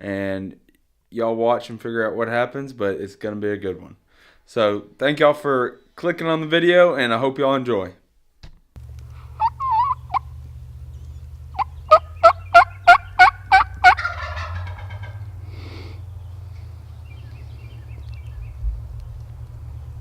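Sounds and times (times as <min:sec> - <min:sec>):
low steady rumble: 0:08.8 - 0:20.0
wild turkey calling: 0:08.8 - 0:20.0.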